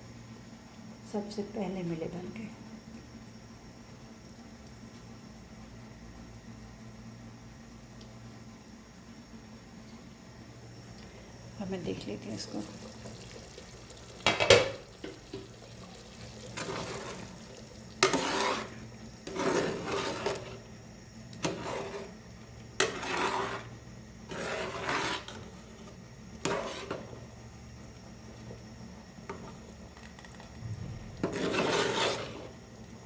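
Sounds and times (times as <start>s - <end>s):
spoon scraping cooking pot: 18.0s - 20.6s, 21.4s - 22.1s, 22.8s - 23.7s, 24.3s - 25.4s, 26.4s - 27.1s, 31.2s - 32.5s.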